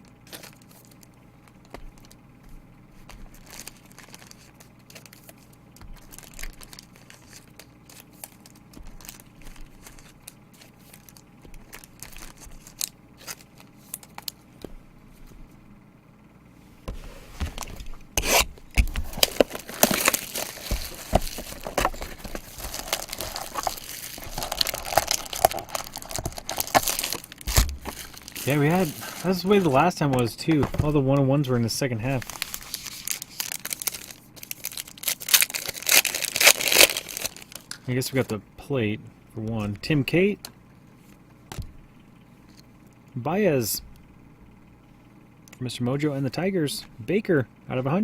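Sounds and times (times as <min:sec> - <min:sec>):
card wrappers tearing and crinkling: 0:00.0 - 0:02.2, 0:03.0 - 0:14.4, 0:17.6 - 0:38.3
cards rustling and clicking: 0:03.0 - 0:15.4, 0:17.4 - 0:38.3.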